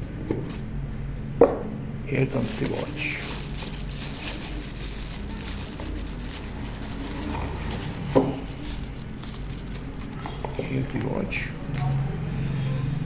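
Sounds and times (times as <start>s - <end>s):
faint handling noise: 0.0s - 11.9s
steady low hum: 0.0s - 13.0s.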